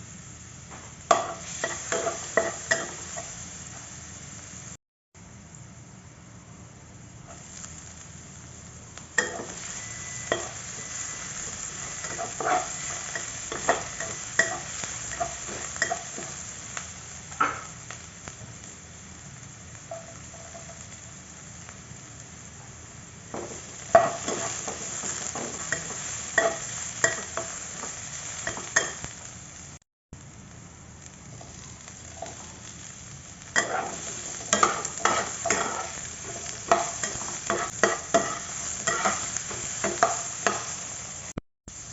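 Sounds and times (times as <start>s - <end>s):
food sizzling in a pan: 0.0s - 41.9s
spatula scraping a pan: 11.6s - 16.3s, 23.4s - 27.4s, 33.6s - 40.7s.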